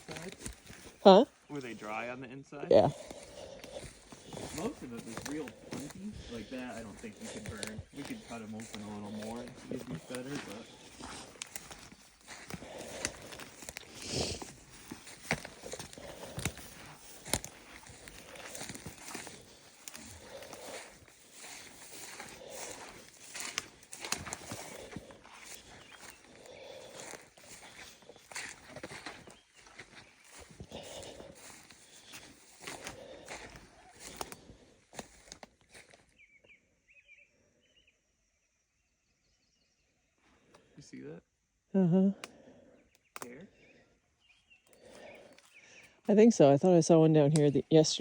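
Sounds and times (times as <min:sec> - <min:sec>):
rustling through brush: 0:00.0 - 0:02.0, 0:02.7 - 0:36.1
dead wood snapping: 0:07.6 - 0:29.2, 0:42.2 - 0:43.4
faint bird chirps: 0:42.6 - 0:46.0.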